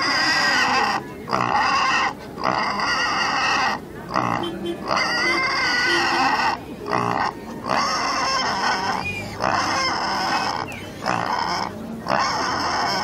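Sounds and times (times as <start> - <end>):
pigs squealing: 0.0 - 13.0.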